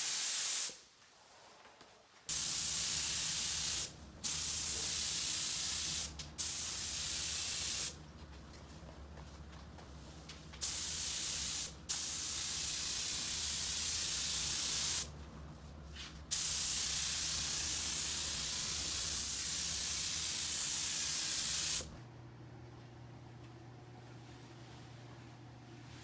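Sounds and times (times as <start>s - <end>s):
spray gun hissing: 0.0s - 0.8s, 2.3s - 8.0s, 10.6s - 15.1s, 16.3s - 21.9s.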